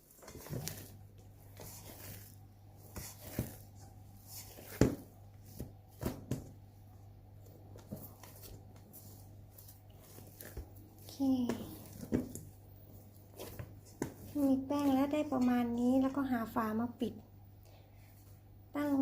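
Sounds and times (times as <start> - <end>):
hands kneading bread dough: 0.0 - 16.6, 17.6 - 19.0
steady low hum: 0.0 - 19.0.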